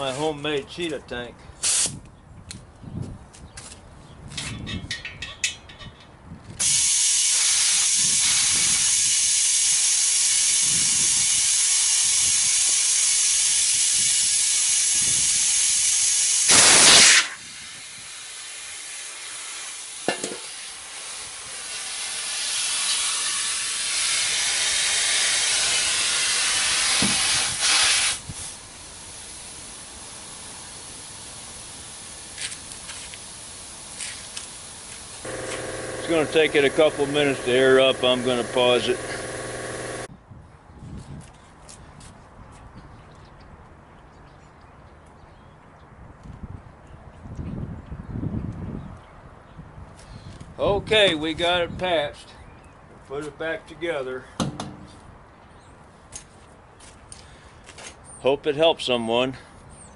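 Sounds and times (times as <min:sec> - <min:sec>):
compressed air hissing: 0:01.6 - 0:02.0, 0:06.6 - 0:40.1
short blast of air: 0:01.6 - 0:02.0, 0:06.6 - 0:20.1, 0:21.6 - 0:28.6.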